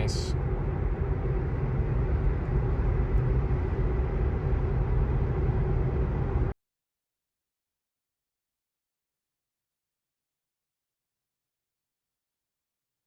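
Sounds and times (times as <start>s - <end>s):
road tyre and wind noise in car: 0.0s - 6.6s.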